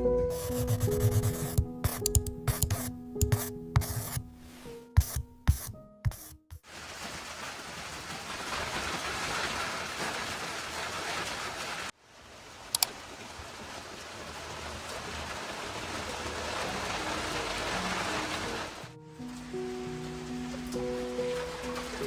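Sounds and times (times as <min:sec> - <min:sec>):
steady rain falling: 0:06.6 - 0:22.0.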